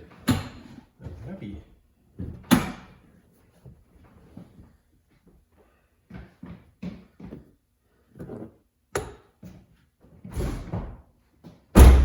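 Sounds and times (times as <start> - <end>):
loud heavy slam: 11.8 - 12.0.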